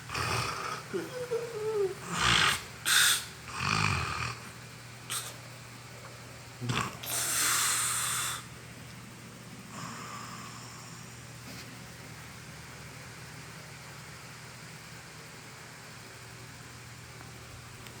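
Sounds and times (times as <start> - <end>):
person snoring: 0.1 - 4.5, 6.6 - 8.5, 9.7 - 11.0.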